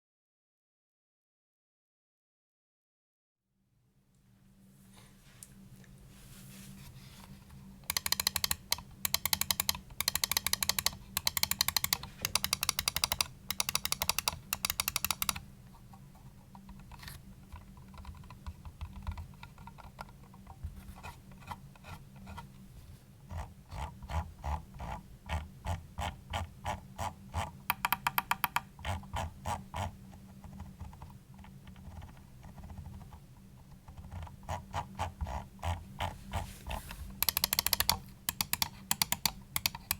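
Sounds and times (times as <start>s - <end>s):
mouse buttons clicking: 7.9s - 15.4s, 27.7s - 28.7s, 37.2s - 39.9s.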